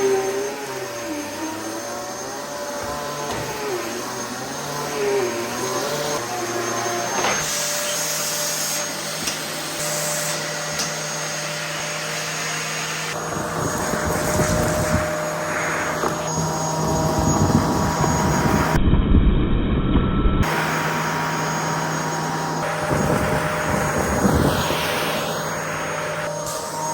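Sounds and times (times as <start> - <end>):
vacuum cleaner running: 0.0 - 18.8, 20.4 - 26.9
low rumble: 16.6 - 20.4.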